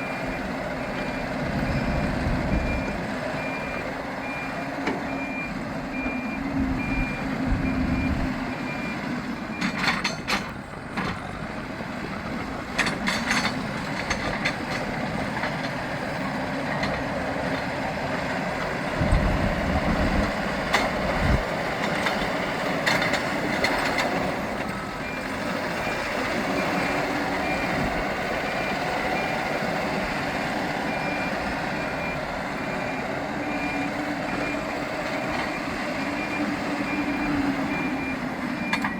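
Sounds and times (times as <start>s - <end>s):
reversing alarm beeping: 0.0s - 10.5s, 19.0s - 38.9s
diesel engine under load: 0.0s - 38.9s.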